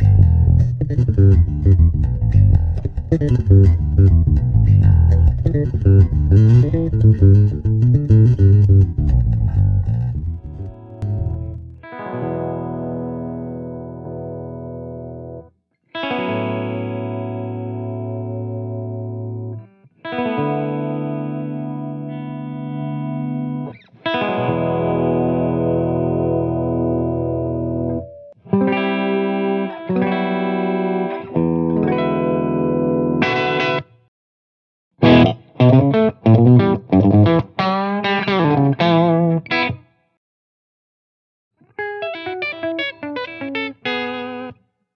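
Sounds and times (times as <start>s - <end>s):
electric bass guitar plucking: 0.0s - 15.5s, 20.4s - 33.8s, 35.0s - 39.6s.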